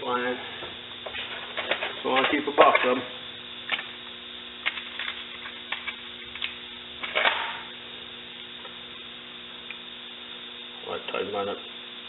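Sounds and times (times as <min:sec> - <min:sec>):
steady electrical hum: 0:00.0 - 0:12.0.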